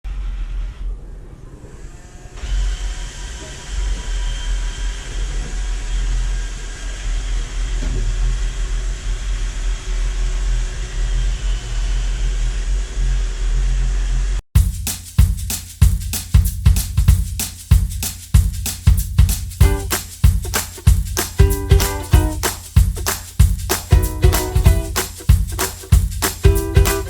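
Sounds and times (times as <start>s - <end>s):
drum music: 14.6s - 27.0s.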